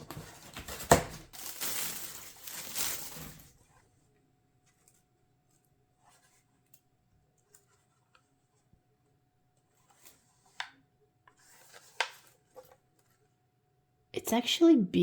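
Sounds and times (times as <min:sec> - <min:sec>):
packaging being handled: 0:00.0 - 0:03.6.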